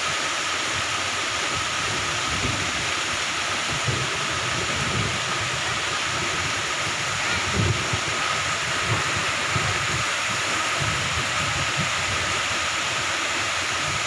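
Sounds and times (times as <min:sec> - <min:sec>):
heavy rain falling: 0:00.0 - 0:14.0
low rumbling: 0:01.6 - 0:12.4.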